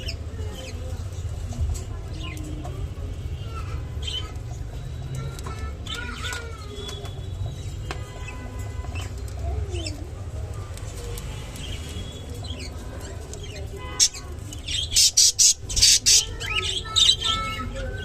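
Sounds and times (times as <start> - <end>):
budgerigars chirping and warbling: 11.6 - 18.0.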